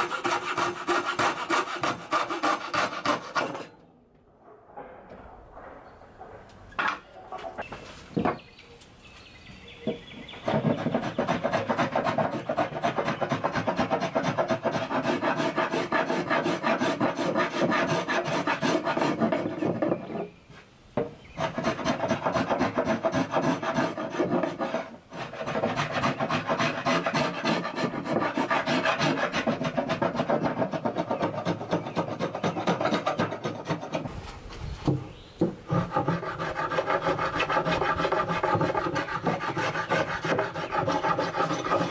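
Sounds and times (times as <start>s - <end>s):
rasp filing wood: 0.0s - 3.7s, 10.4s - 20.3s, 21.4s - 34.2s, 35.7s - 41.9s.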